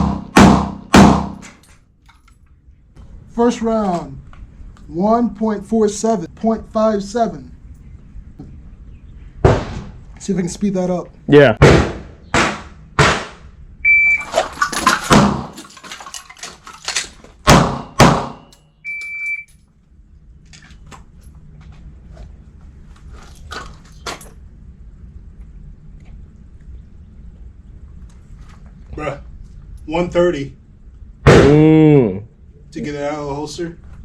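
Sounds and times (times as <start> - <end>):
pistol shots: 0.0 - 1.4, 11.6 - 13.5, 17.5 - 18.5.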